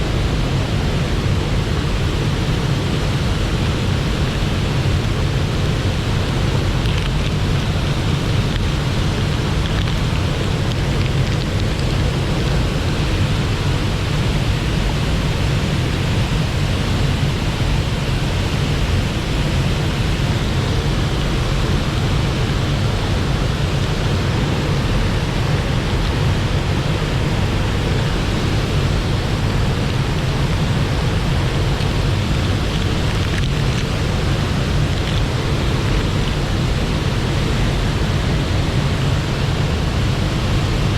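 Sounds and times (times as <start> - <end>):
mountain stream rushing: 0.0 - 40.9.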